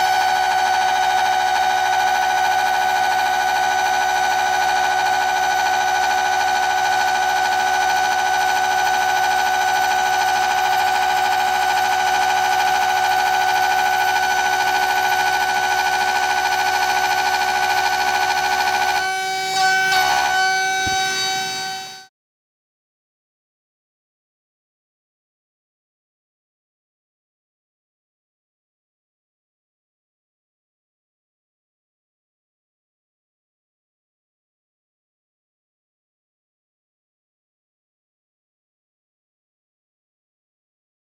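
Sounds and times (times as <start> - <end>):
router spindle high whine: 0.0 - 22.1.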